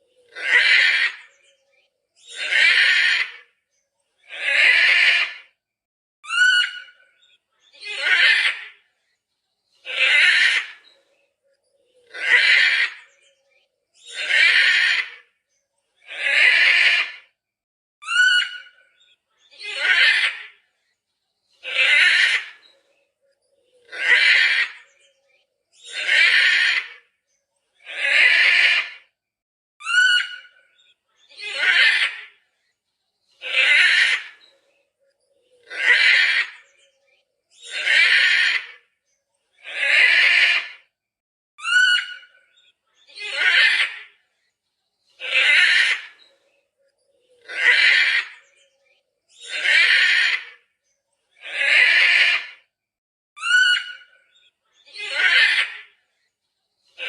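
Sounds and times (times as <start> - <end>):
macaw squawking: 0.2 - 1.4, 2.3 - 3.4, 6.2 - 7.0, 9.9 - 10.8, 12.0 - 13.1, 14.0 - 15.2, 18.0 - 18.8, 19.6 - 20.6, 21.6 - 22.6, 23.8 - 25.1, 25.8 - 27.0, 29.8 - 30.6, 31.2 - 32.4, 33.4 - 34.5, 35.5 - 37.0, 37.6 - 38.8, 41.6 - 44.2, 45.2 - 46.3, 47.3 - 48.7, 49.4 - 50.6, 51.4 - 52.6, 53.4 - 54.1, 54.8 - 55.9
bird call with sliding notes: 53.4 - 54.1.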